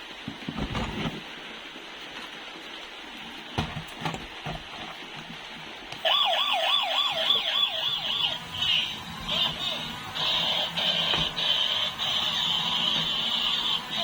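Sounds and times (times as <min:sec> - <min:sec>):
toy siren wailing: 0:06.0 - 0:14.0.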